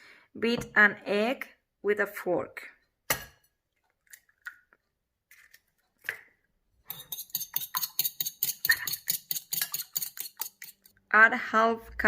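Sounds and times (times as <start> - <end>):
fork beating egg in bowl: 6.8 - 11.0.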